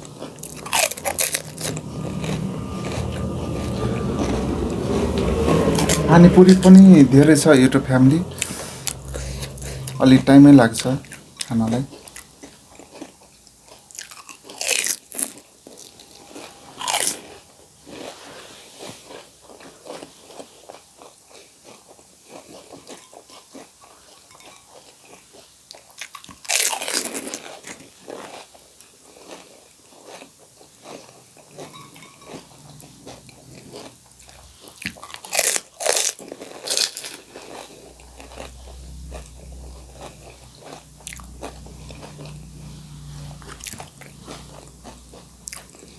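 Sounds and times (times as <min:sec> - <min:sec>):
chewing: 0:00.0 - 0:06.0, 0:08.3 - 0:45.9
crunching crisp food: 0:00.0 - 0:06.6, 0:08.4 - 0:18.2, 0:18.8 - 0:45.9
low hum: 0:00.0 - 0:12.4, 0:31.4 - 0:34.7, 0:37.7 - 0:45.9.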